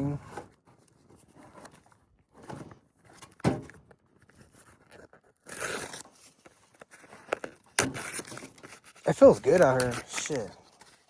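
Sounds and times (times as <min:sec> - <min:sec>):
cardboard scraping rustle: 0:00.0 - 0:11.0
cardboard box thump: 0:03.4 - 0:03.8.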